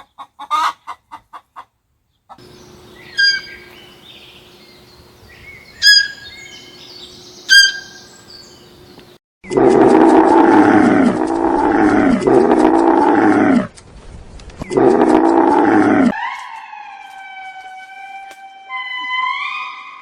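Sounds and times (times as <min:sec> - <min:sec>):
thin whistling tone: 0:07.5 - 0:08.1
large animal roaring: 0:09.5 - 0:13.7, 0:14.7 - 0:16.2.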